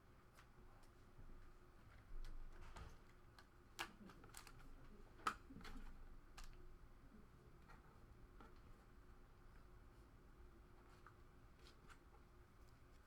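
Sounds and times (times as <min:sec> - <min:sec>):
light clicks and taps at a desk: 0:01.9 - 0:06.6.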